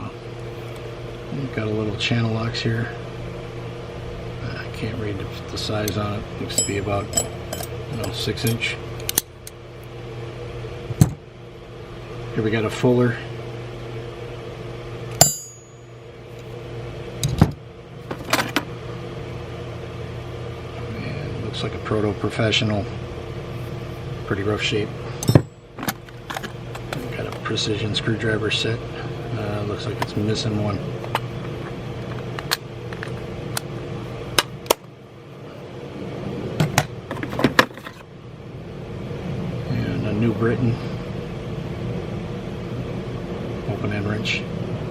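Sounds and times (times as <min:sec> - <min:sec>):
steady low hum: 0:00.0 - 0:44.9
metal tools clicking and clinking: 0:05.8 - 0:09.3, 0:25.2 - 0:27.0
metal hand tools clinking: 0:06.5 - 0:08.6.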